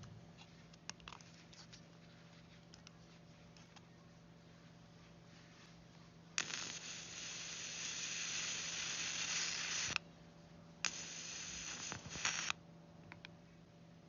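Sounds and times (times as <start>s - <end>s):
arc lighter hissing buzz: 6.4s - 10.0s, 10.8s - 12.6s.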